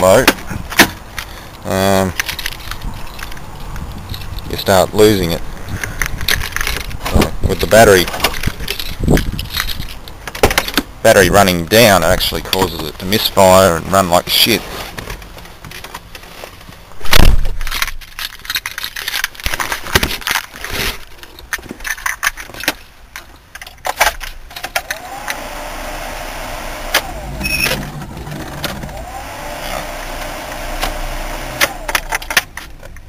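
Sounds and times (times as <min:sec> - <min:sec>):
keys rattling and clicking: 0:01.1 - 0:04.5, 0:05.6 - 0:07.0, 0:07.7 - 0:10.3, 0:17.7 - 0:20.6
loud thump: 0:17.0 - 0:17.6
car engine starting and running: 0:24.6 - 0:32.5.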